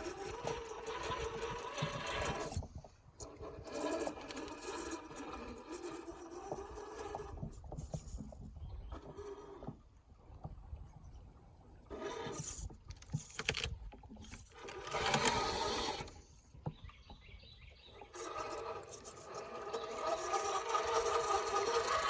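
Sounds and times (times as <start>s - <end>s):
electric motor and gears whining: 0.0s - 16.8s, 17.6s - 22.0s.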